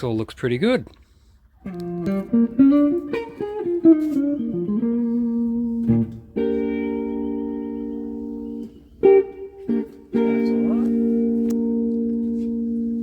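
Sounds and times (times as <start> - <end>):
electric guitar through amplifier: 1.6 - 13.0.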